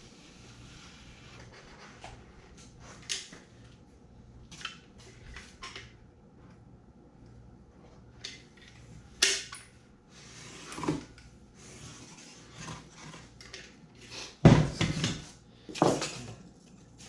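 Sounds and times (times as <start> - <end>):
rubbing and scraping foam: 0.0 - 2.5, 11.6 - 13.3.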